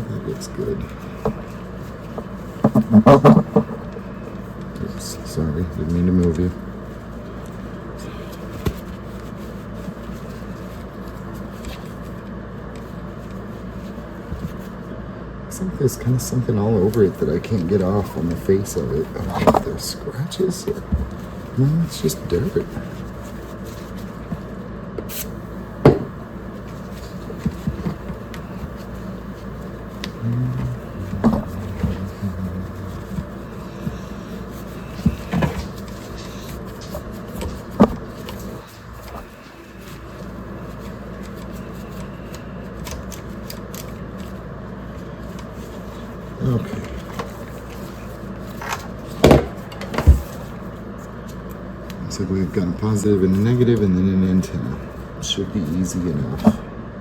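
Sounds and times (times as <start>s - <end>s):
low background hum: 0.0s - 57.0s
radio handled on work surface: 0.9s - 4.7s, 22.7s - 30.2s.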